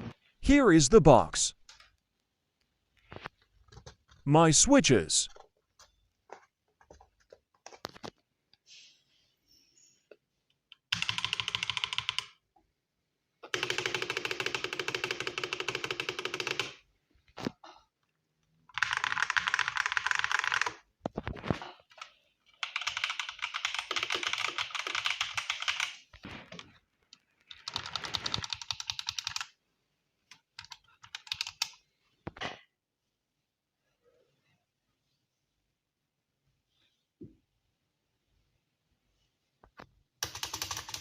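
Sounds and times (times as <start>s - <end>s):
mechanical keyboard typing: 10.9s - 12.4s, 13.5s - 16.8s, 18.7s - 20.8s, 22.6s - 26.0s, 27.5s - 29.6s, 30.3s - 31.8s, 40.2s - 41.0s.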